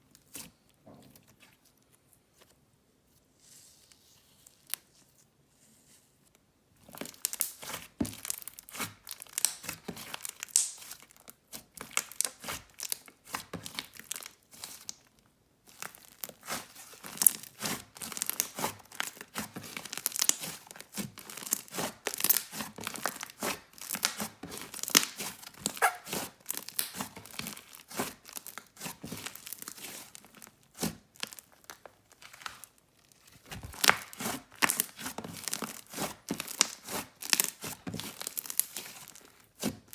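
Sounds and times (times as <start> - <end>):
slime crackling and popping: 6.9 - 15.1, 15.7 - 32.8, 33.5 - 39.9.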